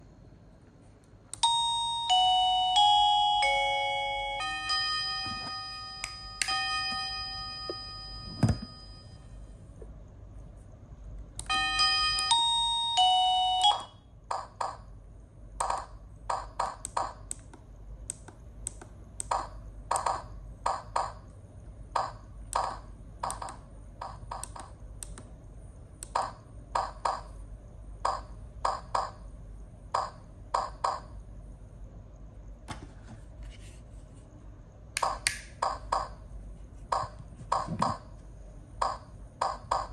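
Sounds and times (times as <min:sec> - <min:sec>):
doorbell chime melody: 0:01.4 - 0:09.3, 0:11.5 - 0:14.0.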